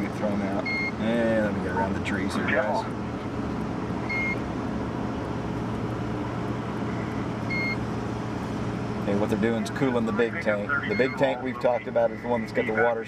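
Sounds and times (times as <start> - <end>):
vehicle engine and road noise: 0.0 - 13.0
short high beeps: 4.1 - 4.4, 7.5 - 7.8, 10.9 - 11.3.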